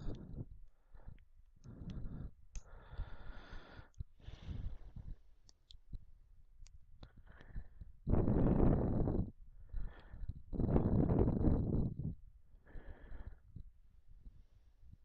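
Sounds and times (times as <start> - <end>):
soft breathing: 0.0 - 5.4, 7.0 - 15.0.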